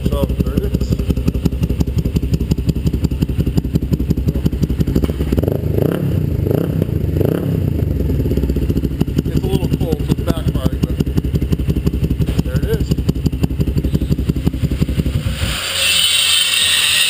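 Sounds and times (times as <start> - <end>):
motorcycle engine idling and revving: 0.0 - 17.0.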